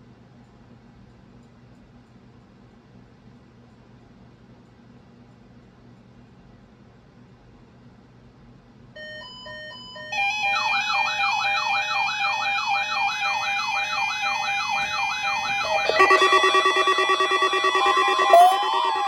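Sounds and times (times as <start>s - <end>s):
warbling siren tone: 10.6s - 19.0s
short electronic beeps: 15.6s - 19.0s.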